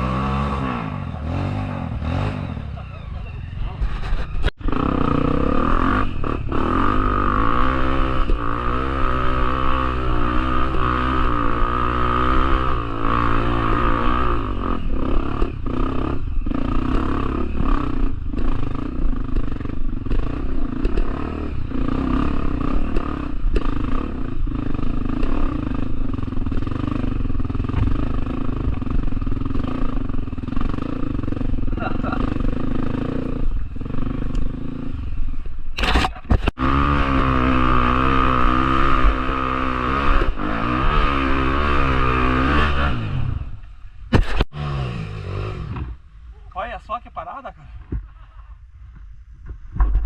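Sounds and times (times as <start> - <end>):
motorcycle engine revving: 0.0 - 46.2.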